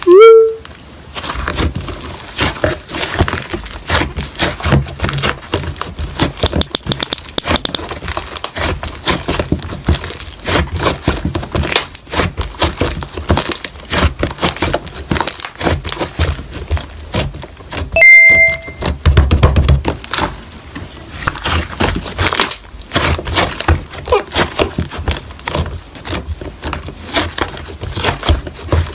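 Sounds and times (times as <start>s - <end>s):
slime squishing and crackling: 0.0s - 28.9s
brief chime: 18.0s - 18.8s.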